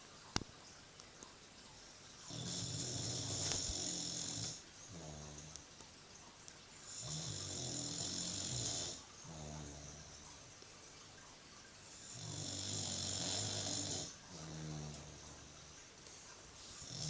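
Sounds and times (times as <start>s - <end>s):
dog snoring: 2.3s - 5.6s, 6.9s - 10.3s, 12.0s - 15.7s, 16.6s - 17.0s.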